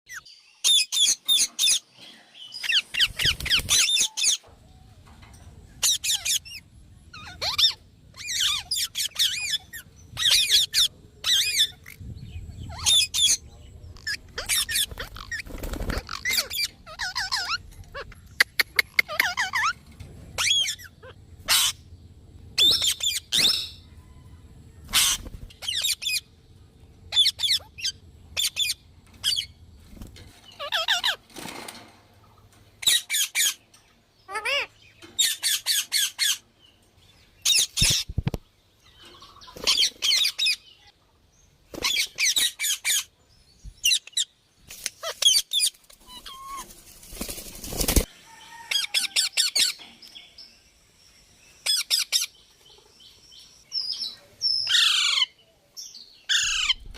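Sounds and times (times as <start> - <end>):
parrot squawking and chattering: 5.8 - 12.0, 12.6 - 13.4, 14.0 - 19.8, 20.4 - 21.8, 24.9 - 26.3, 27.1 - 29.5, 30.6 - 31.3, 32.8 - 33.6, 34.3 - 36.4, 45.0 - 46.6, 54.7 - 55.3, 56.3 - 56.8.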